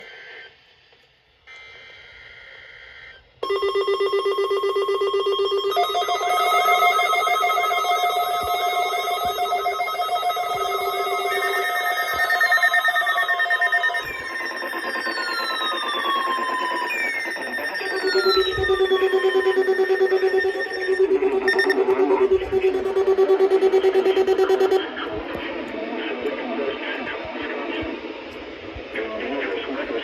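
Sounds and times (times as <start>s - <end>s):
fast-pulsing alarm beeps: 3.4s - 25.0s
high data-like tones: 3.4s - 25.4s
falling whistle-like glides: 5.8s - 24.8s.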